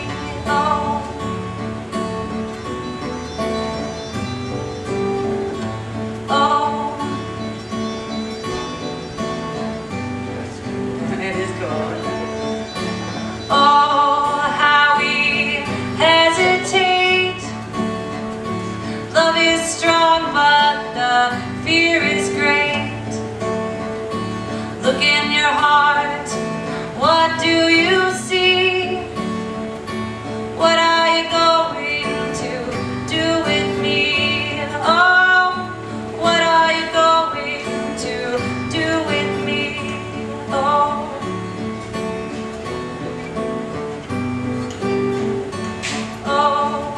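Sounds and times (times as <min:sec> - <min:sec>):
acoustic guitar strumming: 0:00.0 - 0:46.9
person singing: 0:13.4 - 0:17.7, 0:46.0 - 0:46.9.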